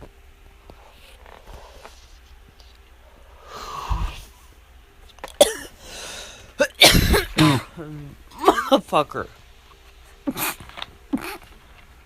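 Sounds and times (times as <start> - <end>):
person sneezing: 6.6 - 8.8, 10.2 - 11.5.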